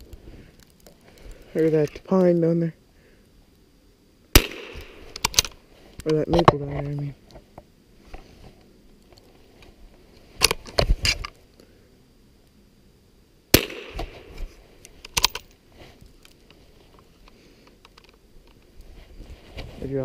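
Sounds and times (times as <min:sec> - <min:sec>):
rifle shot with echo: 0:04.3 - 0:05.5, 0:13.5 - 0:14.4
rifle action clicking: 0:15.0 - 0:15.5.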